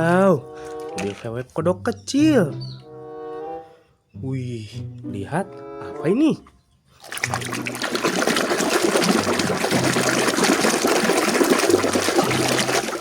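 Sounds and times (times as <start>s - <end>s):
water splashing and pouring: 0.9s - 1.3s, 7.0s - 13.0s.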